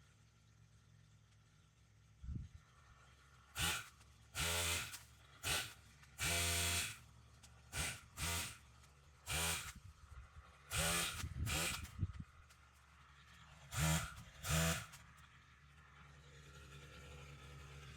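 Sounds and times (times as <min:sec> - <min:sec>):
saw engine revving: 0:03.6 - 0:07.0, 0:07.7 - 0:08.6, 0:09.3 - 0:09.8, 0:10.7 - 0:12.0, 0:13.7 - 0:15.0.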